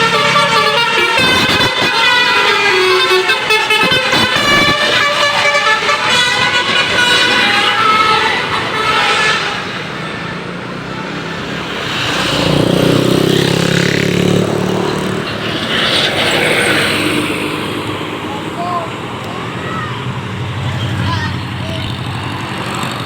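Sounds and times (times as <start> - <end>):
multi-tone bus air horn tune: 0.0 - 11.9
passing vehicle drone: 0.0 - 23.0
traffic noise: 0.0 - 23.0.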